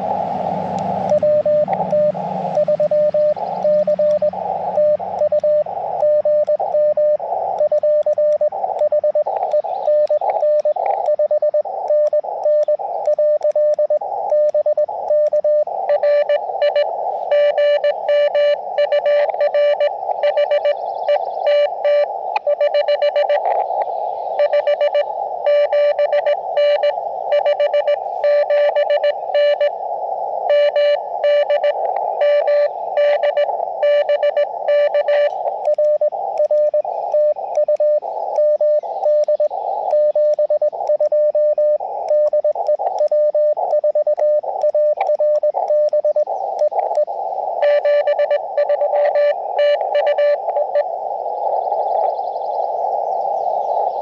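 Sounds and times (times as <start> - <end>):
morse code tone: 0.0 - 23.6, 24.4 - 29.8, 30.4 - 50.9
receiver hiss: 0.0 - 54.0.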